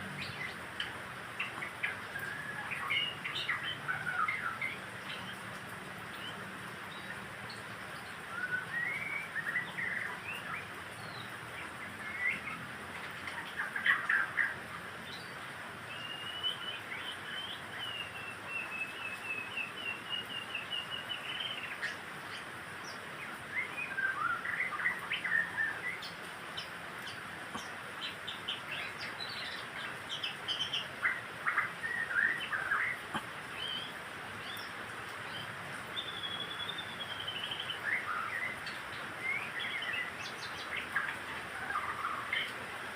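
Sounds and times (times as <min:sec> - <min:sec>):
bird singing whistled phrases: 0:08.3 - 0:10.4, 0:16.0 - 0:21.0, 0:23.6 - 0:25.9, 0:36.0 - 0:38.6.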